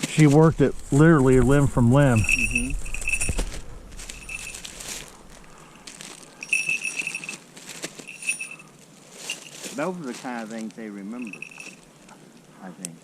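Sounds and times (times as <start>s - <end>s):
soft handling rustle: 0.0s - 12.5s
small bells jingling: 1.9s - 5.6s, 6.3s - 11.9s.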